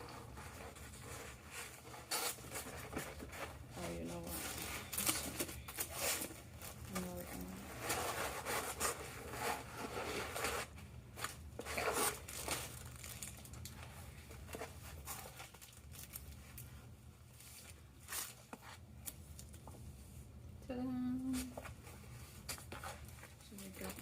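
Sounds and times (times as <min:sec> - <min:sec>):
packaging tearing and crinkling: 0:11.6 - 0:13.7, 0:15.0 - 0:16.7.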